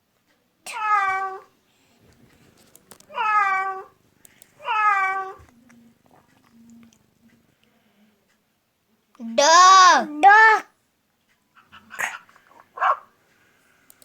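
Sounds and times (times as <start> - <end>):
cat meowing: 0.7 - 1.5, 3.1 - 3.9, 4.6 - 5.4.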